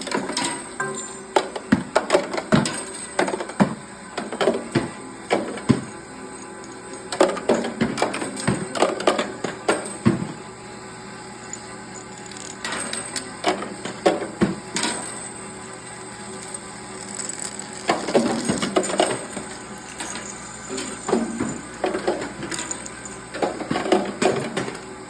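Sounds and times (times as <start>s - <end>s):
cartridges clinking in sorter: 0.0s - 3.6s, 12.3s - 24.8s.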